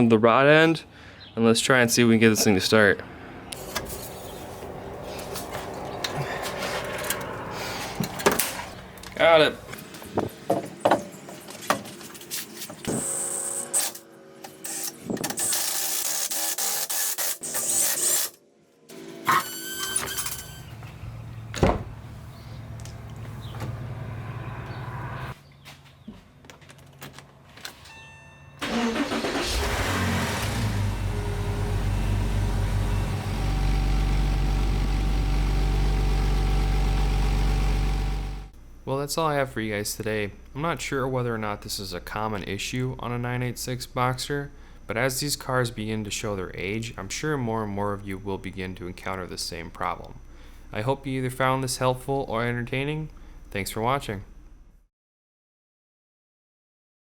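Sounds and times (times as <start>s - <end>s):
car engine cranking and idling: 20.7s - 25.3s, 28.6s - 38.6s.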